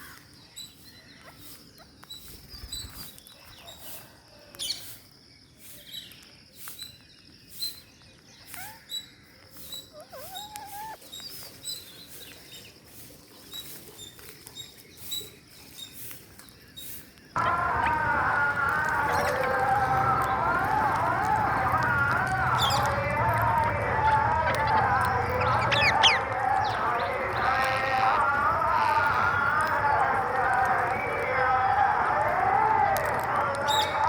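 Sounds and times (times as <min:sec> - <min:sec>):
parrots chirping and squeaking: 0:08.4 - 0:09.0, 0:09.6 - 0:11.8, 0:22.1 - 0:29.4
rising whistled calls: 0:17.4 - 0:33.0, 0:33.6 - 0:34.0.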